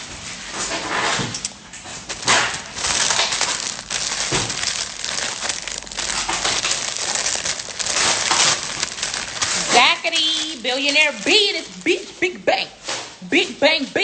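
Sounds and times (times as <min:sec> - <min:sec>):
gift wrapping crinkling: 0:02.1 - 0:12.4.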